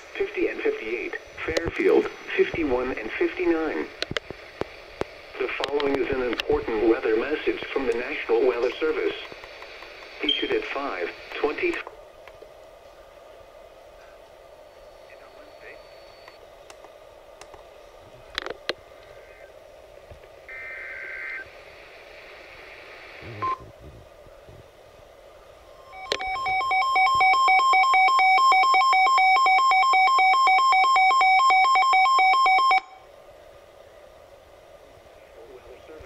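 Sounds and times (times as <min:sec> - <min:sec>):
warbling data tones: 0:20.5 - 0:21.5, 0:25.8 - 0:33.0.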